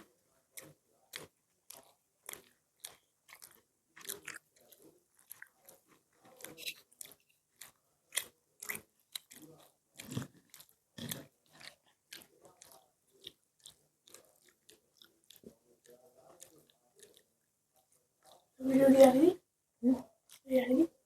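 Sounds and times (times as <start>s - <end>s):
person chewing with wet mouth clicks: 0.0s - 18.5s, 20.2s - 20.5s
crunchy bites: 0.6s - 15.5s.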